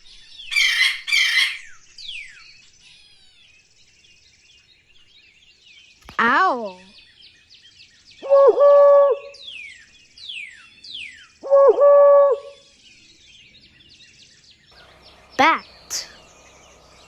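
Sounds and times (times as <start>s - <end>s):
small birds chirping: 0.0s - 17.0s
owl hooting: 0.5s - 1.7s, 8.2s - 9.5s, 11.4s - 12.7s.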